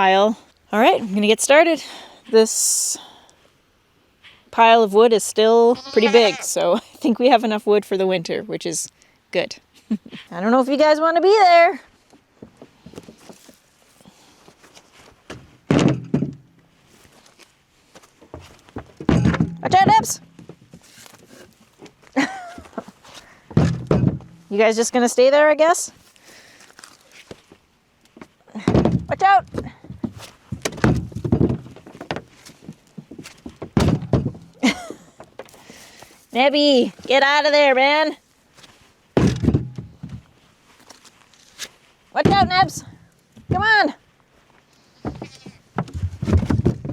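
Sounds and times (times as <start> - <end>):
log landing with a thunk: 15.3 - 16.4, 18.3 - 21.6, 22.5 - 24.4, 28.6 - 36.1, 38.6 - 40.3, 45.0 - 46.9
firewood knocking: 18.3 - 21.5, 23.5 - 24.4, 28.7 - 36.1, 39.2 - 40.2, 42.2 - 43.8, 45.0 - 46.9.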